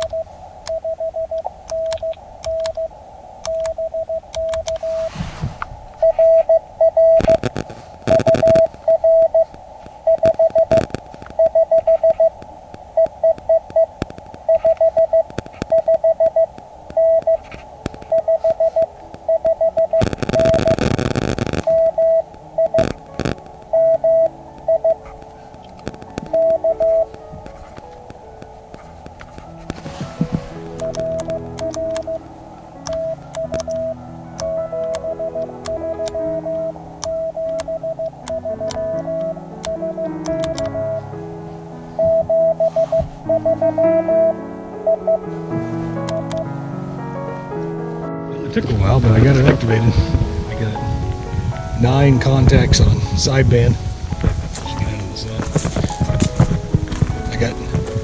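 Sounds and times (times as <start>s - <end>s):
morse code tone: 0.0s - 5.1s, 6.0s - 12.4s, 13.0s - 25.2s, 25.8s - 27.8s, 30.7s - 41.0s, 42.0s - 45.3s, 45.9s - 46.6s
bursts of radio noise: 6.2s - 24.3s.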